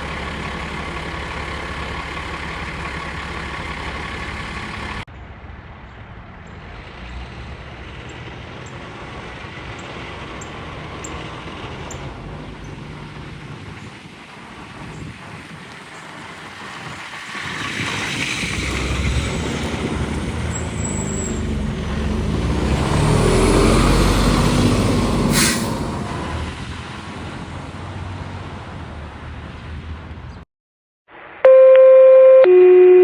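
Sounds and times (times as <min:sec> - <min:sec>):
fire truck diesel engine passing: 0:00.0 - 0:05.1, 0:06.2 - 0:29.9
air brake hiss: 0:25.2 - 0:26.0.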